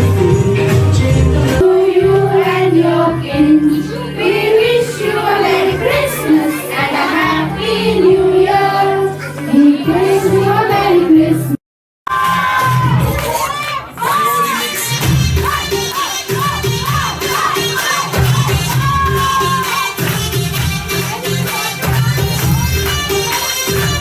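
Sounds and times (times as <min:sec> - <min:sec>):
backing track with bass line: 0:00.0 - 0:11.5, 0:14.3 - 0:24.0
high singing voice: 0:12.2 - 0:24.0.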